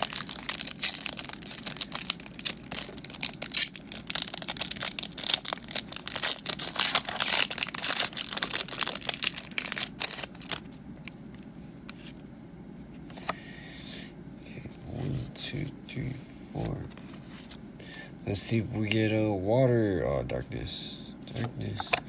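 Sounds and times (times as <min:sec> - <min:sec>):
foil wrapper crinkling: 0:00.0 - 0:11.4.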